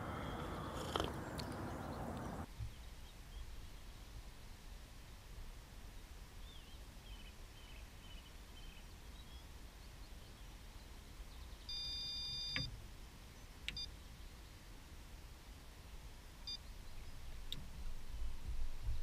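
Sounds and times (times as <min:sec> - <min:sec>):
birdsong: 0:00.0 - 0:04.1, 0:06.4 - 0:11.9.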